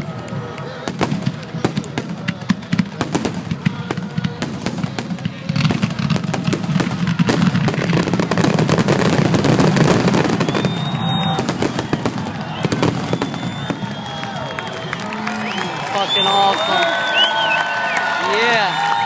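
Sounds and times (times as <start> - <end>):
fireworks bangs and crackles: 0.0 - 19.0.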